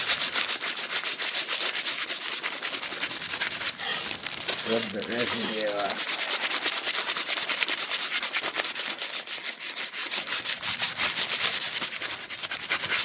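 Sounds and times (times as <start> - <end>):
scrubbing metal sprocket: 3.1 - 6.4.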